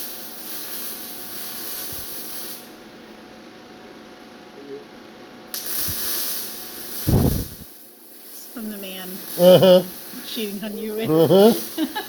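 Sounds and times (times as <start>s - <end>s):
welder arc hissing: 0.0s - 2.9s, 5.5s - 12.0s.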